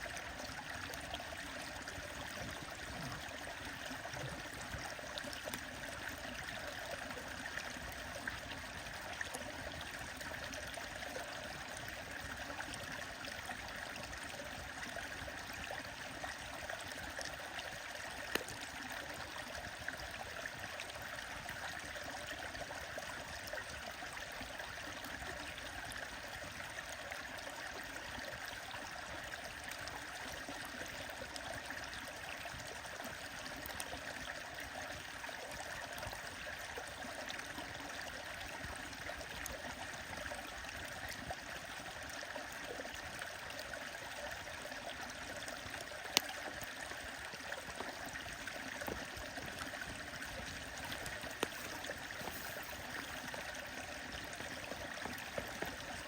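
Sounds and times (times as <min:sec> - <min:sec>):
stream running: 0:00.0 - 0:56.0
wood fire popping: 0:50.6 - 0:53.4.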